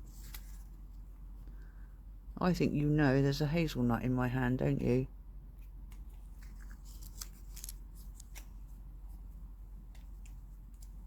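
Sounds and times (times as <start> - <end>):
squirrel handling a nut: 5.5 - 11.0.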